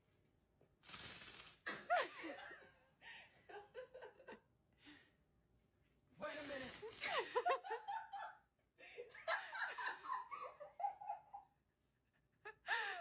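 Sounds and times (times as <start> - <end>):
people laughing and giggling: 1.9 - 4.5, 7.0 - 13.0.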